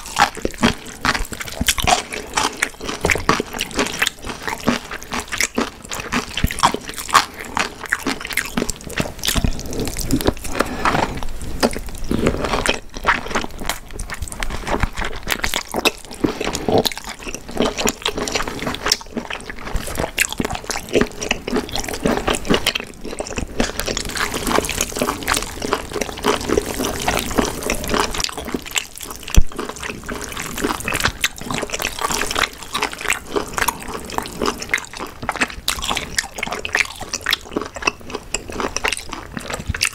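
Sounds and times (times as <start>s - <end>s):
person chewing and slurping: 0.0s - 39.9s.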